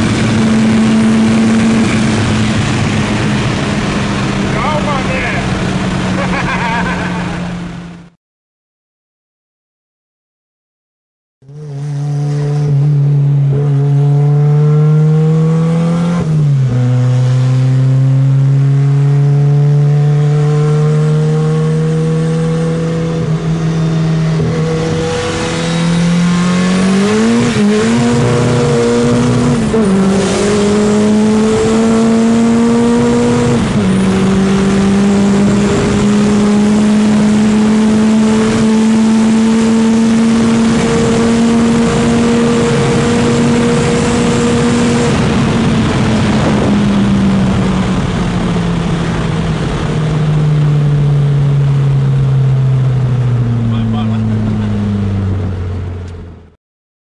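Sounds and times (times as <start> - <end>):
heavy wind rush: 0.0 - 7.8, 40.5 - 50.6
engine at full throttle: 0.0 - 8.1, 11.4 - 56.6.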